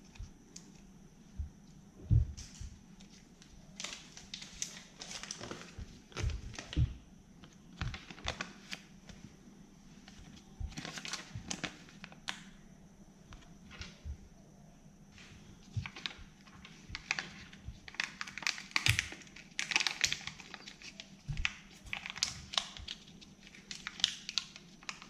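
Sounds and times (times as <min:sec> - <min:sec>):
candy wrappers crinkling: 0:15.8 - 0:25.0.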